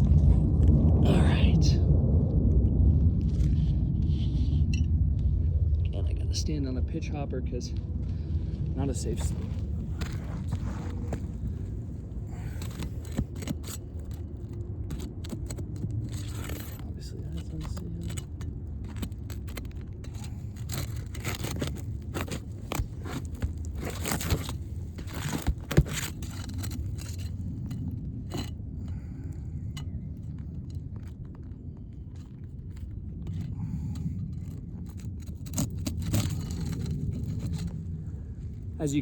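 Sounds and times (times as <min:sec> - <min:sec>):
low rumble: 0:00.0 - 0:38.9
roof shingle scraping and tearing: 0:08.8 - 0:39.0
shingle snapping: 0:09.0 - 0:29.0, 0:30.3 - 0:38.1.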